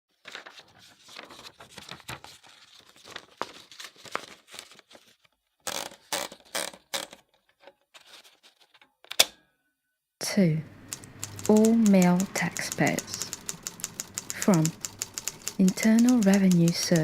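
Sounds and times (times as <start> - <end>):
rasping ratchet bursts: 10.8 - 17.0
typewriter clicking: 10.8 - 17.0.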